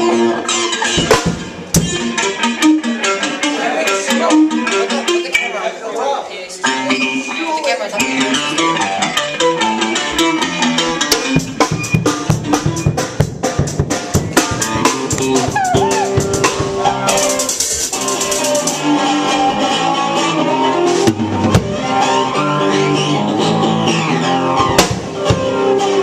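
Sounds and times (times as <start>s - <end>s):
electric guitar notes ringing: 0.0s - 5.5s, 8.0s - 26.0s
rapid drum hits: 0.9s - 2.2s, 10.9s - 18.8s, 20.9s - 22.0s, 24.7s - 25.7s.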